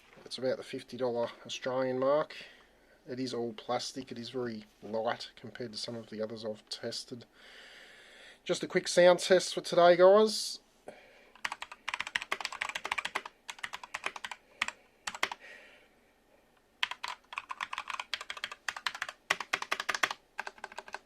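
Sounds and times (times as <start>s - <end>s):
mechanical keyboard typing: 11.4s - 15.4s, 16.8s - 21.0s.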